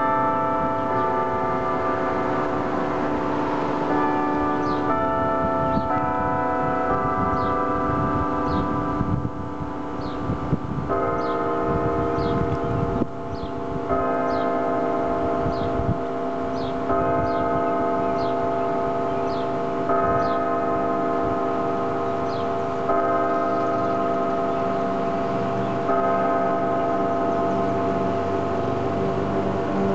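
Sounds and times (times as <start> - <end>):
church bell tolling: 0.0 - 29.9.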